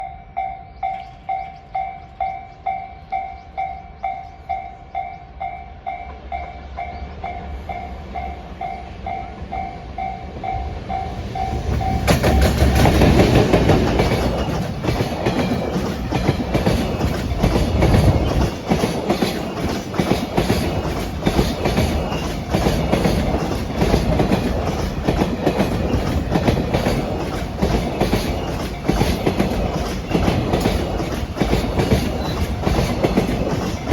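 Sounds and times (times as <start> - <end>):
level crossing warning bell: 0.0 - 18.5
train passing: 0.0 - 33.9.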